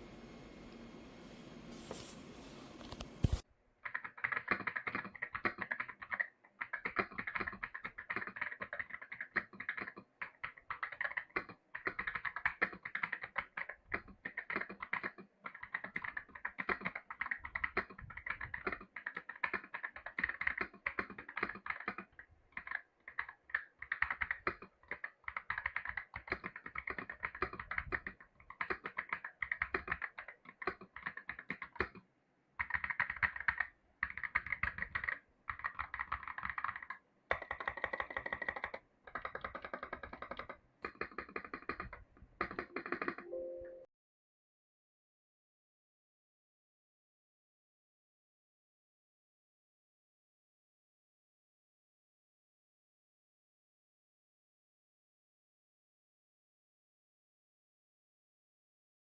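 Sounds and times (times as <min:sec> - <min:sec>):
fast mechanical keyboard typing: 0:03.8 - 0:43.3.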